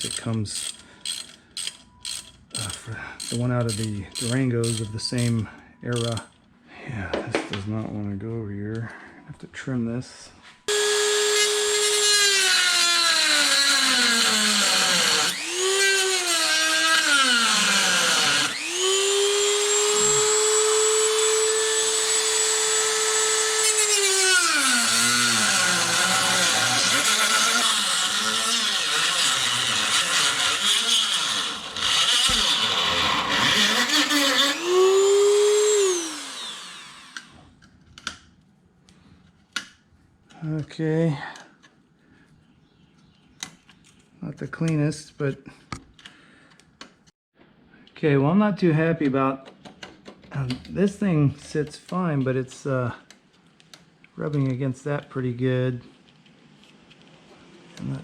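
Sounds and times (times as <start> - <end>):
rotary tool motor whine: 10.7 - 37.4.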